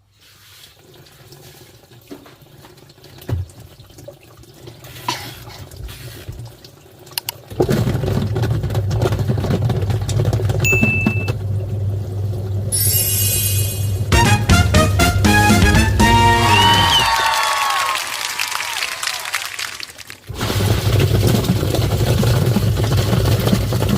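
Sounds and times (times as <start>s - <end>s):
short high tone: 10.7s - 11.3s, 12.7s - 14.9s.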